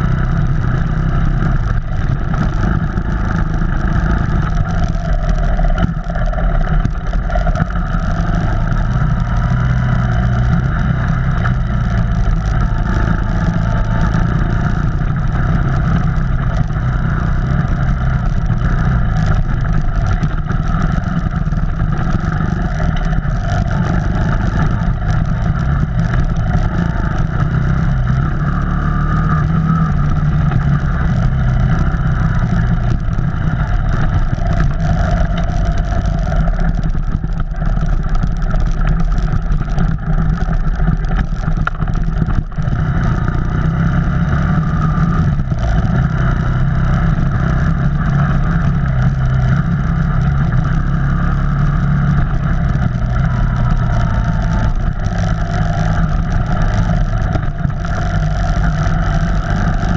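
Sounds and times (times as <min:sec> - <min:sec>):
vehicle engine running: 0:00.0 - 0:59.9.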